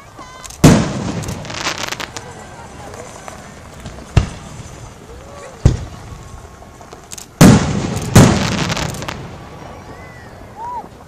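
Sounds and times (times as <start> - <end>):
firework crackling: 0.0 - 11.0
firework shells booming: 0.6 - 2.3, 3.8 - 5.0, 5.6 - 10.6.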